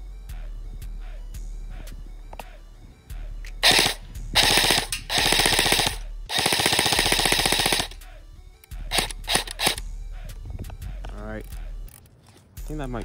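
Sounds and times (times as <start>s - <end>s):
airsoft gun firing bursts: 3.6s - 8.0s, 8.9s - 9.8s.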